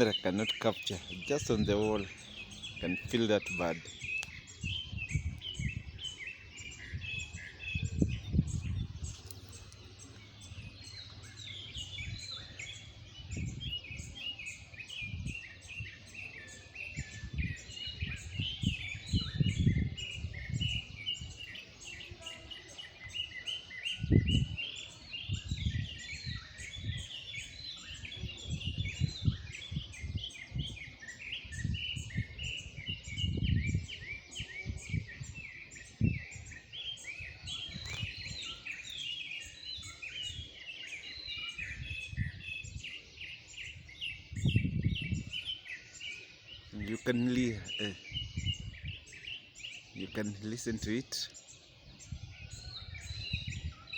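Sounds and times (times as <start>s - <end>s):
songbirds chirping and trilling: 0.0s - 53.9s
low rumble on microphone: 1.2s - 14.2s, 17.0s - 21.4s.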